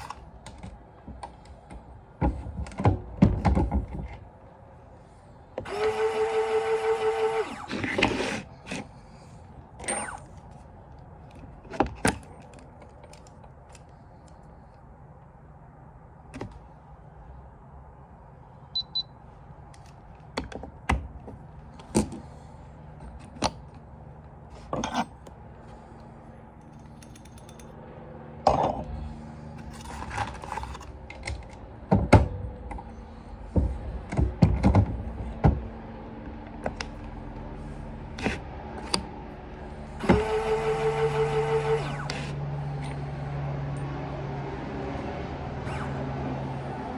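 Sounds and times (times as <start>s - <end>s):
mechanical hum: 21.3s - 46.9s.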